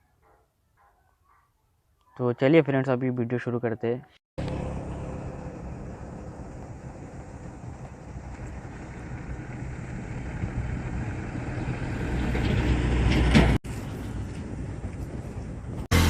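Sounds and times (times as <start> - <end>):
car engine running: 4.4 - 12.0
road noise: 4.4 - 16.0.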